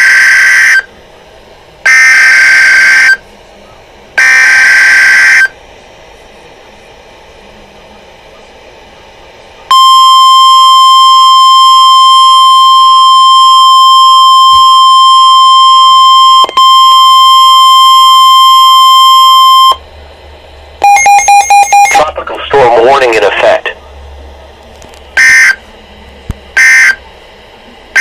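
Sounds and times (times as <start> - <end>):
steady alert tone: 20.8 - 23.0.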